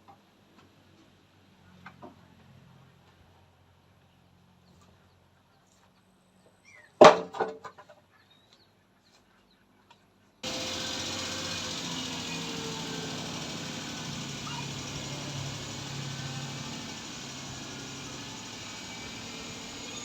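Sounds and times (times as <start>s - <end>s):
motor running: 10.4s - 20.0s.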